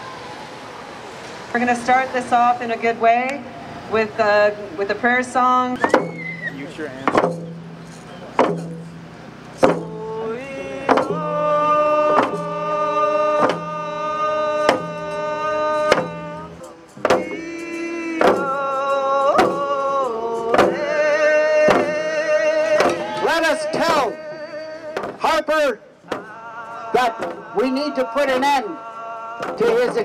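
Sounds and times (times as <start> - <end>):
steady drumbeat: 5.8 - 25.5, 26.1 - 28.8, 29.4 - 30.0
person singing long held notes: 9.5 - 25.2, 26.0 - 30.0.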